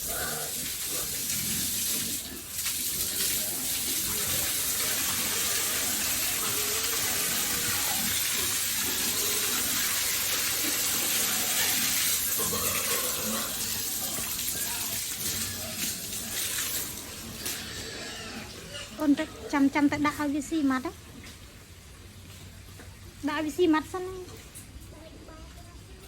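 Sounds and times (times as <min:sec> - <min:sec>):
water spraying: 0:00.0 - 0:17.7.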